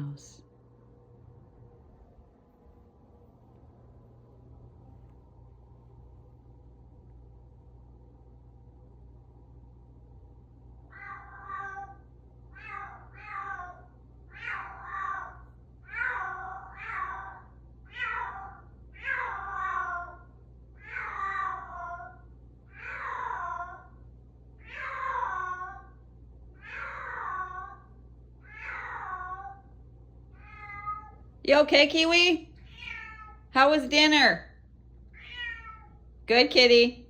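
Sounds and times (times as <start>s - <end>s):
cat meowing: 10.9s - 23.9s, 24.6s - 26.0s, 26.6s - 29.7s, 30.4s - 31.2s, 32.6s - 33.5s, 35.1s - 36.0s.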